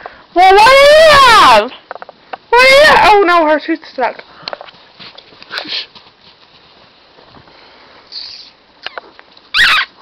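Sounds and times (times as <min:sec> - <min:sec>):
puppies scuffling and pattering: 0:04.0 - 0:07.6
puppy high-pitched yelp: 0:09.5 - 0:10.0.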